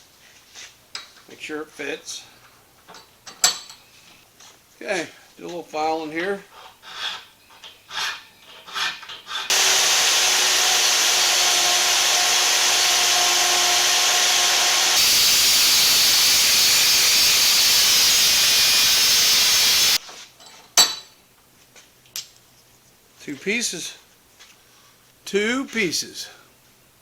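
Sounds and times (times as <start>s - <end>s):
power tool grinding steel: 9.5s - 20.0s.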